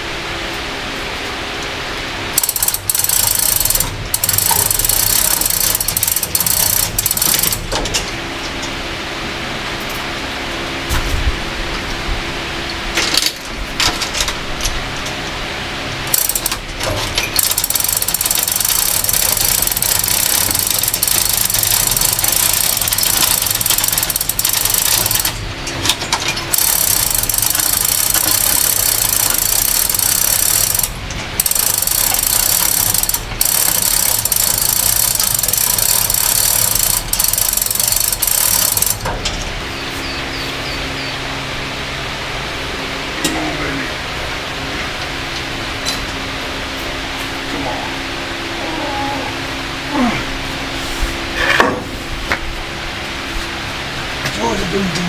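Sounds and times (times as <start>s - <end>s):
mechanical tool noise: 2.4s - 7.8s, 16.1s - 39.1s.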